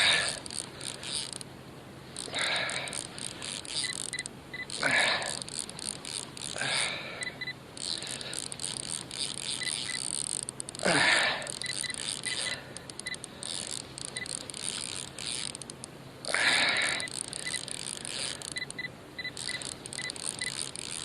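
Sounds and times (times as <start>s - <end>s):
fishing reel clicking: 0.0s - 1.5s, 2.2s - 21.0s.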